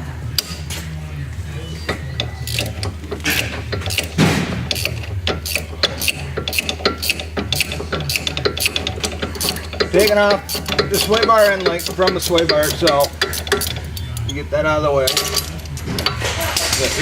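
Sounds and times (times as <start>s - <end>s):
loud metal clank: 1.9s - 14.0s
ratchet wrench clicking: 1.9s - 17.0s.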